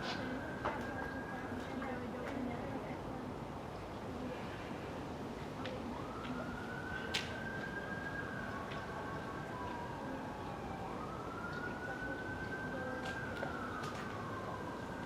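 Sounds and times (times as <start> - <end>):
siren wailing: 5.8 - 15.0.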